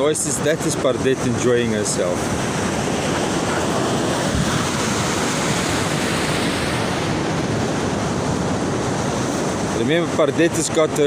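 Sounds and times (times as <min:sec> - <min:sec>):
surf washing onto beach: 0:00.0 - 0:11.0
wind buffeting microphone: 0:00.0 - 0:11.0.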